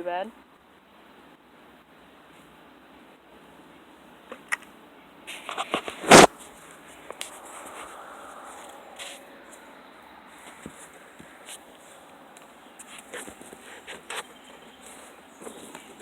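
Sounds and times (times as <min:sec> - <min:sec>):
faint hiss: 0:00.0 - 0:16.0
microphone handling clicks: 0:05.3 - 0:06.3.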